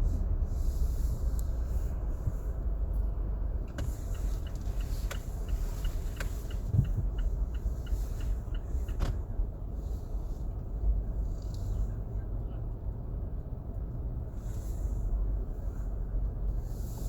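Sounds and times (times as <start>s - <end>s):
road and wind noise: 0.0s - 17.0s.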